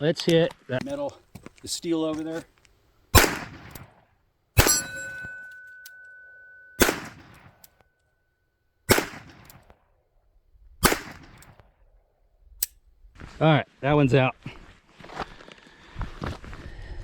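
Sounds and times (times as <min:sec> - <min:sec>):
revolver shots: 0:03.2 - 0:03.8, 0:06.6 - 0:07.6, 0:08.9 - 0:09.5, 0:10.8 - 0:11.4
steel target ringing: 0:04.6 - 0:07.8.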